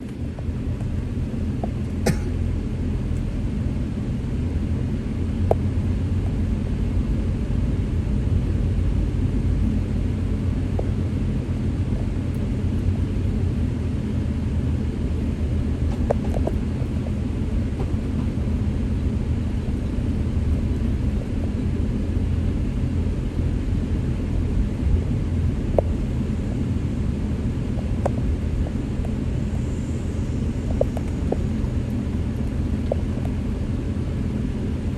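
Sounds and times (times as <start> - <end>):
traffic rumble: 0.0 - 34.9.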